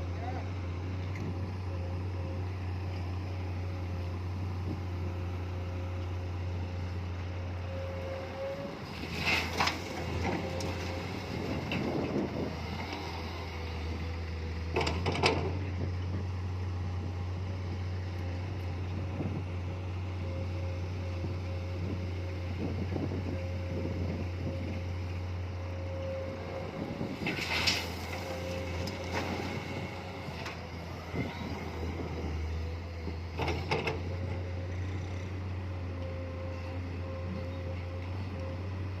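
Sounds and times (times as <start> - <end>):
excavator diesel engine running: 0.0 - 39.0.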